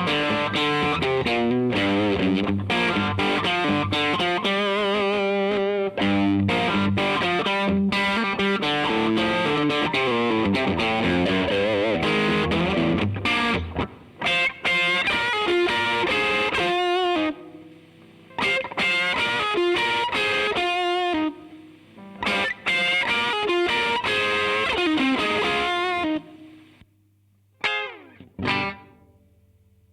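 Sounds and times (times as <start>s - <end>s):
distorted electric guitar: 0.0s - 26.8s, 27.5s - 29.4s.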